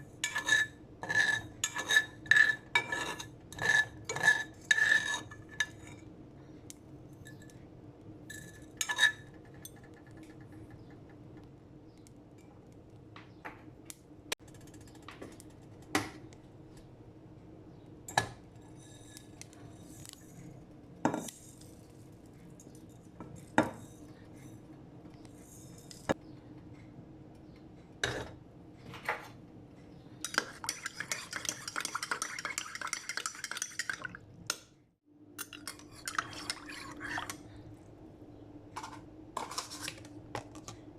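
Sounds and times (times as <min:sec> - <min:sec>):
fast stirring and scraping: 0:00.2 - 0:05.9, 0:30.2 - 0:34.2, 0:35.4 - 0:37.6, 0:39.4 - 0:40.2
utensils clinking against dish: 0:00.2 - 0:06.0, 0:08.3 - 0:10.3, 0:30.2 - 0:34.6, 0:35.4 - 0:37.4.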